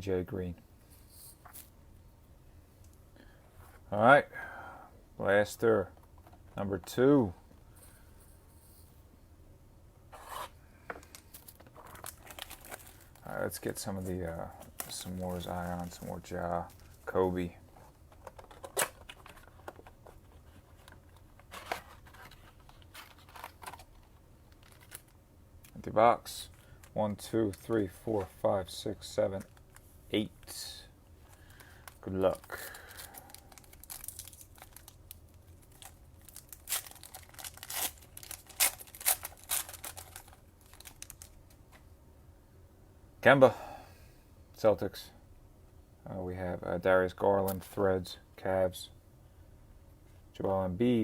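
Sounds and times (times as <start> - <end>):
packaging crinkling and tearing: 11.0 - 13.8, 20.7 - 25.2, 31.3 - 41.5.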